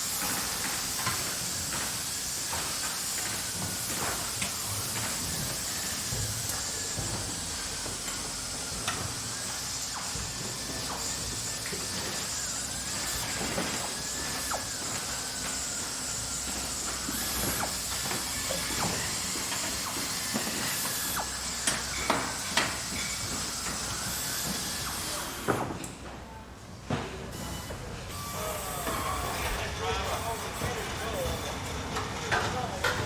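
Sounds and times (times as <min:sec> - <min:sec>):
factory machinery hiss and hum: 0:00.0 - 0:33.0
faint wavering squeal: 0:27.4 - 0:31.6.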